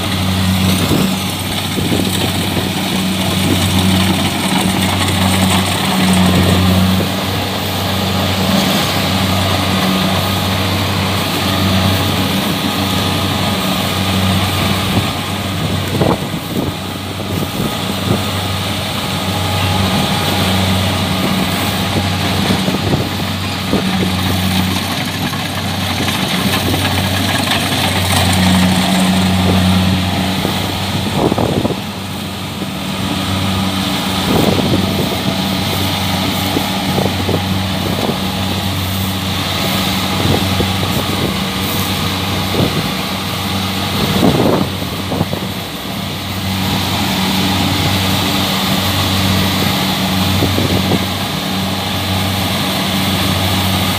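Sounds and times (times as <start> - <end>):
combine harvester engine drone: 0.0 - 53.9.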